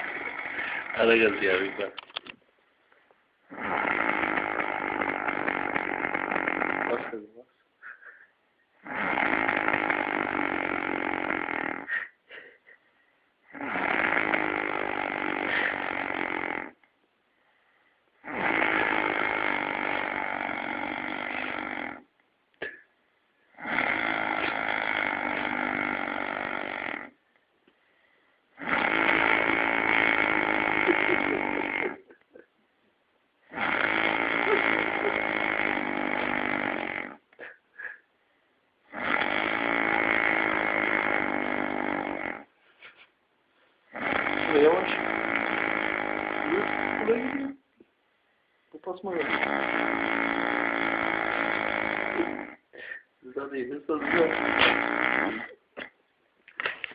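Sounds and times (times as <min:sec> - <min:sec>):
man snoring: 0:00.0 - 0:02.0, 0:03.5 - 0:08.2, 0:08.8 - 0:12.6, 0:13.4 - 0:16.9, 0:18.2 - 0:22.8, 0:23.5 - 0:27.2, 0:28.5 - 0:32.2, 0:33.5 - 0:38.1, 0:38.8 - 0:42.5, 0:43.9 - 0:47.6, 0:49.1 - 0:55.9
quiet breaths: 0:11.7 - 0:55.8.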